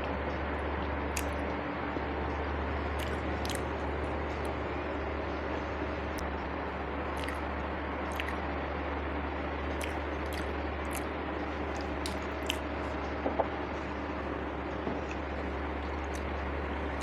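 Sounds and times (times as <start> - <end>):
low hum: 0.0 - 17.0
person chewing food: 1.1 - 1.5, 2.9 - 4.6, 6.9 - 8.4, 9.7 - 13.0, 14.2 - 17.0
wet mouth clicks and smacks: 1.1 - 1.5, 3.0 - 4.6, 7.1 - 8.4, 9.7 - 12.8, 15.1 - 17.0.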